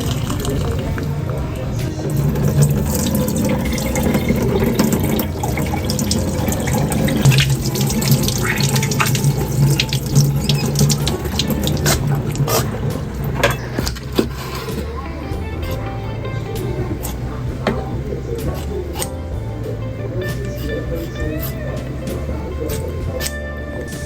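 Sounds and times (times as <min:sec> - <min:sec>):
tap water running into sink: 0:00.0 - 0:15.1, 0:16.6 - 0:19.2.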